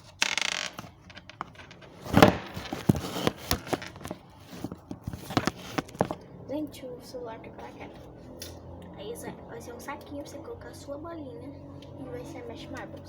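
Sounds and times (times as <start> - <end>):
plastic sheet crinkling: 2.0 - 6.2.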